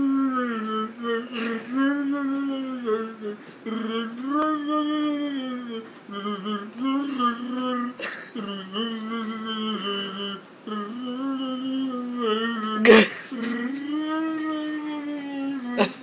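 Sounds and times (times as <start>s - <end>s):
person imitating a wookiee call: 0.0s - 16.0s.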